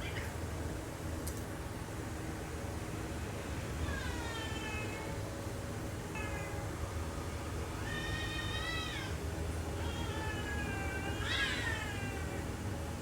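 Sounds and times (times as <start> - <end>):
cats yowling: 3.8 - 5.2, 6.1 - 6.7, 7.8 - 9.2, 9.8 - 12.5.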